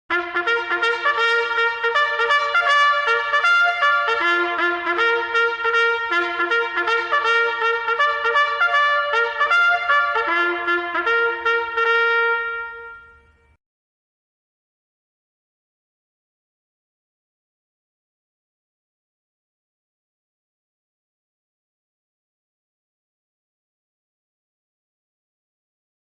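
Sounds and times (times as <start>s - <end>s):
military trumpet call: 0.1s - 13.6s.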